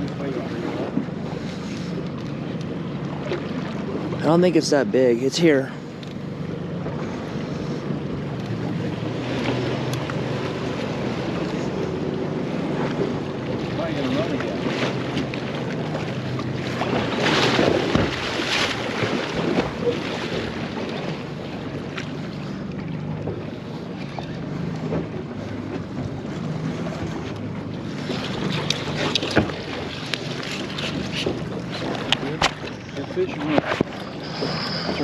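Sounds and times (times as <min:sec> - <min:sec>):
boat motor running: 0:00.0 - 0:35.0
water noise: 0:00.0 - 0:35.0.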